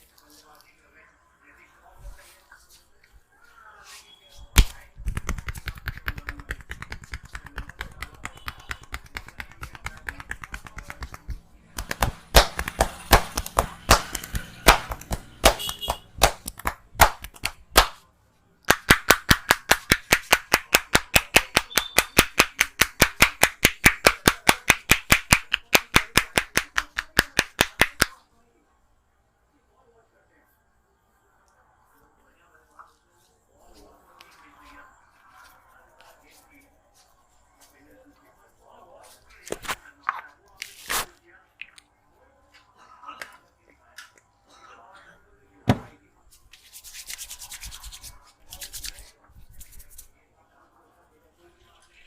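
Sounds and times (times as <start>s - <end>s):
hands slapping and tapping: 4.5s - 18.0s, 18.6s - 28.2s
hands clapping: 4.6s - 18.0s, 18.6s - 28.2s.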